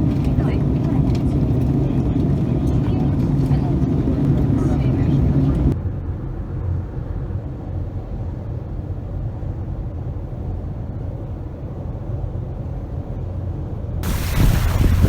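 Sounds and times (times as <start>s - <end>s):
surf: 14.0s - 15.0s
vehicle engine rumble: 14.0s - 15.0s
wind blowing on microphone: 14.0s - 15.0s.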